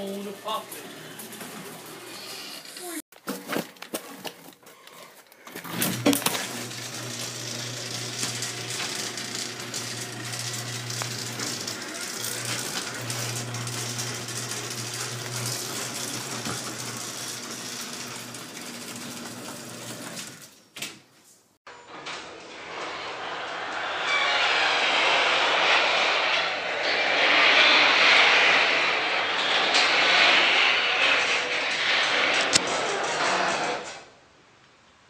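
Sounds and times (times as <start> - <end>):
garage door opener motor humming: 5.6 - 20.6.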